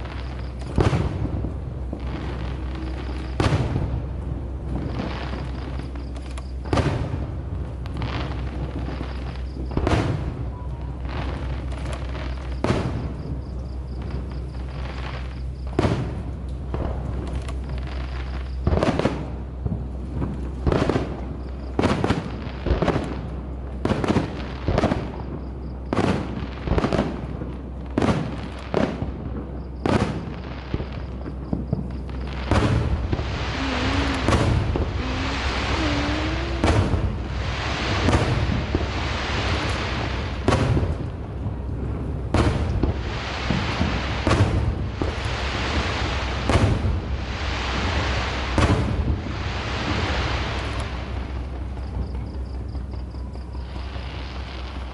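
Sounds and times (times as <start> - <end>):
fireworks bangs: 0.0 - 54.9
fireworks crackling: 0.0 - 54.9.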